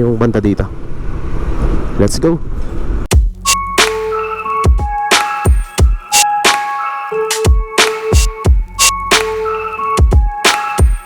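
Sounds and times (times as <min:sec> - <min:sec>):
bell-like synth notes: 0:03.5 - 0:11.0
sharp drum hits: 0:07.4 - 0:09.2.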